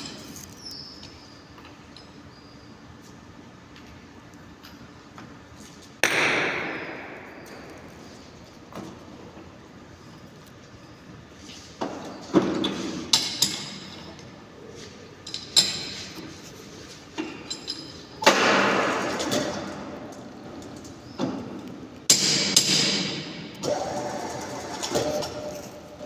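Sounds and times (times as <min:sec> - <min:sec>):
metal tools knocking and clanking: 0:15.2 - 0:16.2, 0:17.2 - 0:18.4.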